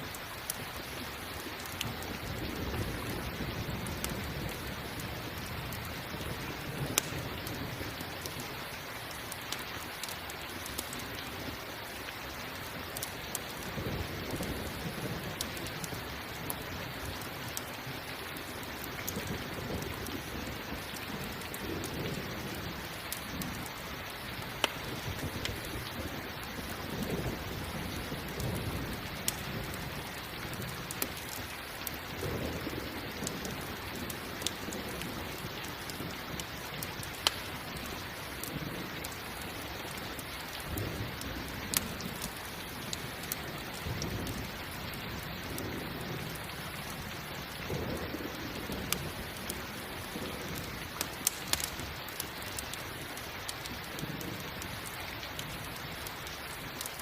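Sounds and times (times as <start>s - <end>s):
campfire crackling: 0.0s - 57.0s
rain hissing: 0.0s - 57.0s
thunder rumbling: 1.6s - 8.5s, 13.6s - 52.0s.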